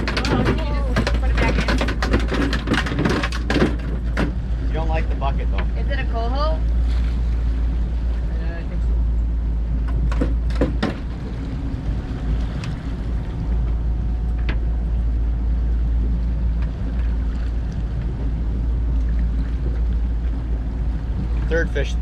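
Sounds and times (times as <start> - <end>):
sharp knocks: 0.0 - 4.4
boat motor rumbling: 0.0 - 22.0.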